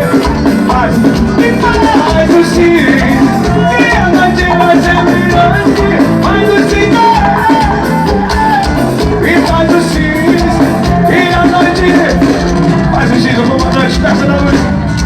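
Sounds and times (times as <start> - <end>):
gliding melodic lead line: 0.0 - 15.0
live band playing: 0.0 - 15.0.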